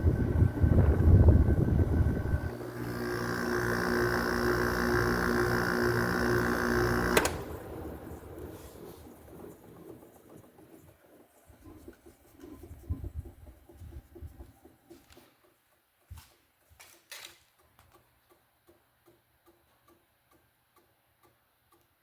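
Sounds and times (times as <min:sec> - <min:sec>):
air conditioner hum: 0:00.0 - 0:15.4
air conditioner switch click: 0:07.0 - 0:07.6.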